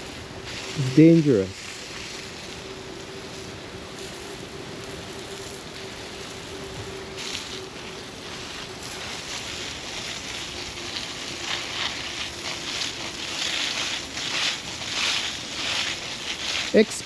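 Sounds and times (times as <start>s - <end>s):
faint steady hum: 0.0s - 17.0s
fire crackling and hissing: 0.0s - 17.0s.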